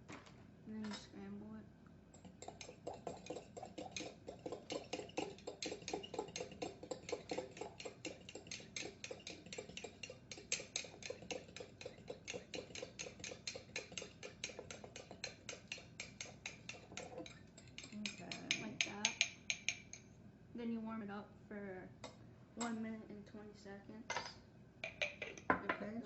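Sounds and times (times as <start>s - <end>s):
utensil tapping plastic cooker: 2.4s - 20.0s.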